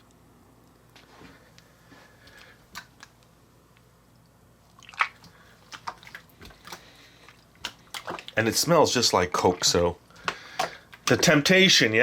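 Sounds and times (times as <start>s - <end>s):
slime squelching: 2.2s - 11.7s.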